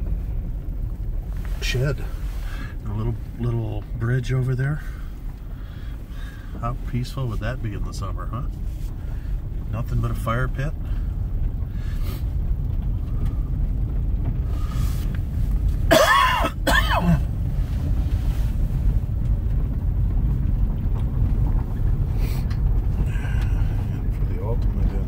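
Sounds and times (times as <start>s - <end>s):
road rumble inside vehicle: 0.0s - 25.0s
man coughing: 15.9s - 17.3s.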